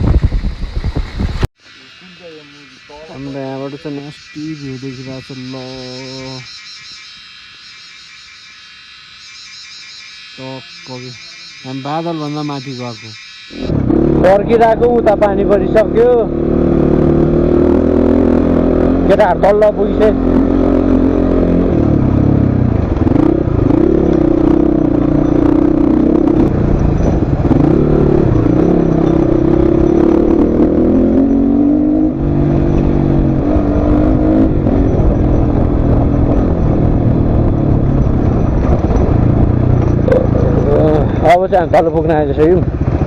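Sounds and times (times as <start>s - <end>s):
motorcycle engine revving: 2.9s - 7.0s, 9.5s - 43.0s.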